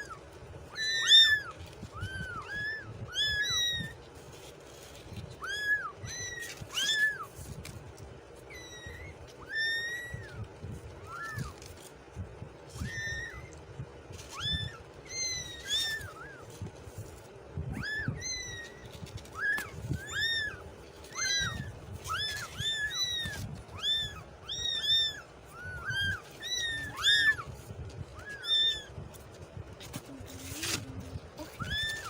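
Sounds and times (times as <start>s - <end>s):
kittens meowing: 0.0s - 32.0s.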